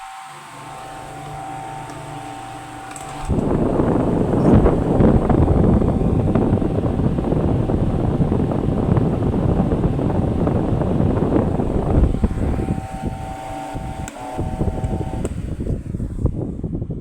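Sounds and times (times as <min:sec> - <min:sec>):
fan motor hum: 0:00.0 - 0:17.0
fan wind buffeting microphone: 0:00.0 - 0:17.0.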